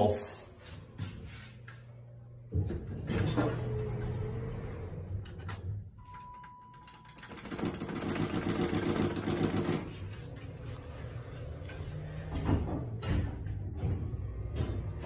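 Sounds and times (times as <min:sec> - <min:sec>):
elevator low hum: 0:00.4 - 0:08.0, 0:09.3 - 0:15.0
elevator rattling mechanical run: 0:02.4 - 0:06.0, 0:07.1 - 0:15.0
elevator beep: 0:06.0 - 0:07.5.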